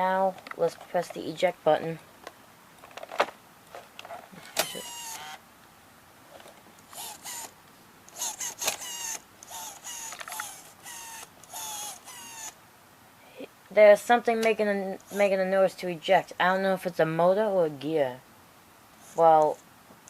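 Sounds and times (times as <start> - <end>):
squeaky whirring motor: 4.6 - 5.4, 6.9 - 12.6, 15.0 - 15.4.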